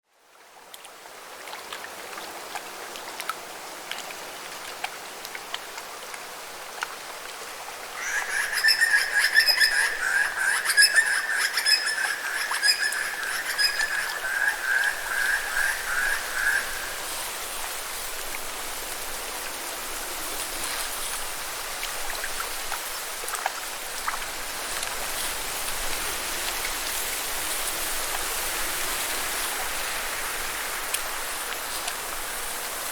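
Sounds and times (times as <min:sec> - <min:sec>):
frog trilling: 0:08.0 - 0:17.0.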